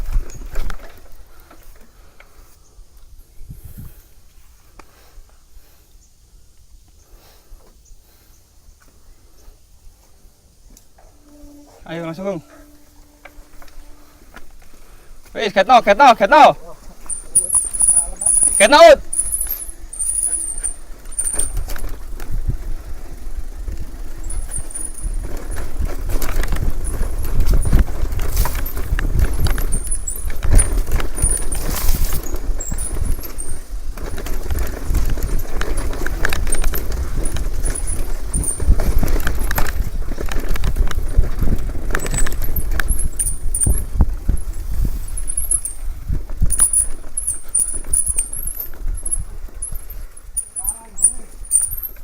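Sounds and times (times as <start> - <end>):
bike tyres rumbling: 0.0 - 52.0
short high squeaks: 10.8 - 21.8, 24.2 - 33.7, 35.3 - 39.3, 41.9 - 52.0
bike rattling and knocking: 12.7 - 52.0.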